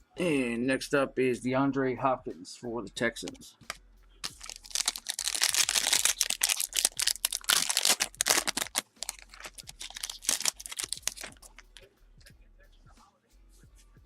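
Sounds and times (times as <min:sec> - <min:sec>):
plastic sleeves rustling and crinkling: 0:03.3 - 0:11.7.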